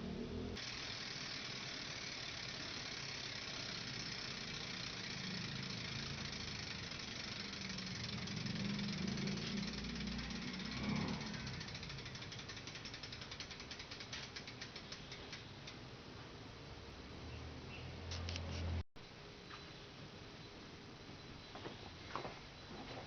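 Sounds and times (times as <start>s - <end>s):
bicycle freewheel hub clicking: 0.6s - 15.9s.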